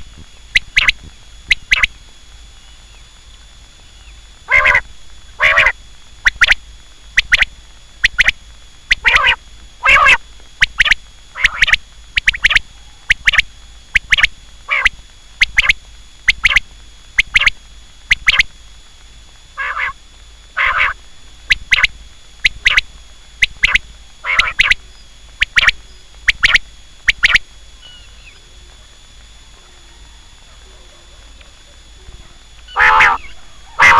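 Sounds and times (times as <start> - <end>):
quail calling: 0.0 - 1.9, 4.5 - 4.8, 5.4 - 6.6, 8.9 - 15.7, 18.1 - 18.5, 19.6 - 20.0, 20.6 - 21.9, 23.4 - 24.8, 25.4 - 28.4, 32.6 - 33.9.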